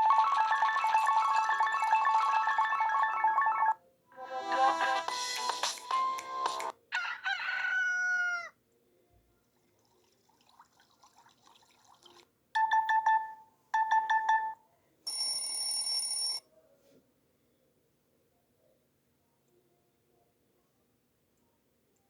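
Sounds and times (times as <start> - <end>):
phone call tone with gliding pitch: 0.0 - 5.1.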